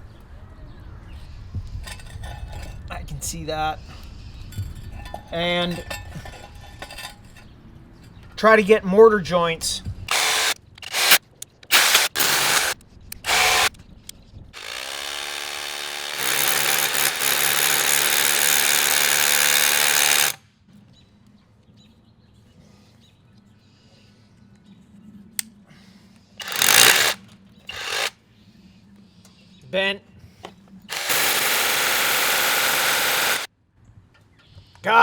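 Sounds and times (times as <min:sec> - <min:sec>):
hammer drill boring into rock: 0:10.1 - 0:13.7, 0:14.6 - 0:20.4, 0:26.4 - 0:28.1, 0:30.9 - 0:33.5.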